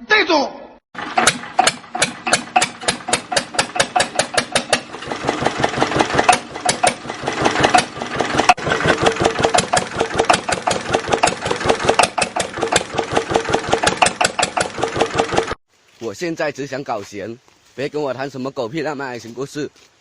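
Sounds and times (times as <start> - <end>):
small engine chugging: 1.0 - 15.6.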